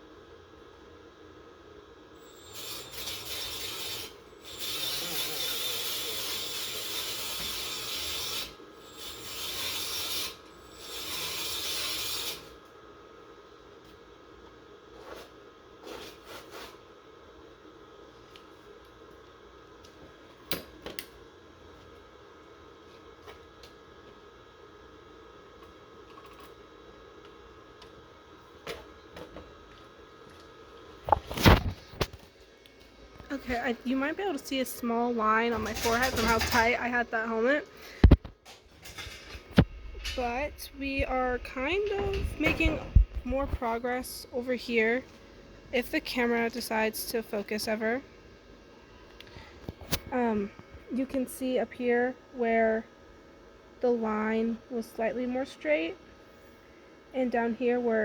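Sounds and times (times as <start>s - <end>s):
faint steady hum: 0.0s - 58.0s
welding arc: 2.2s - 12.6s.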